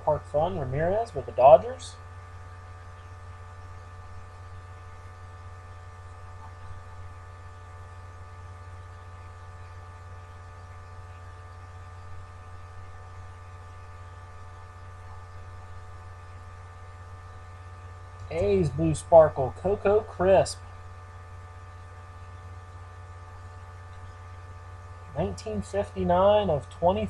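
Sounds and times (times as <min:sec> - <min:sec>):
electrical mains hum: 0:00.0 - 0:27.0.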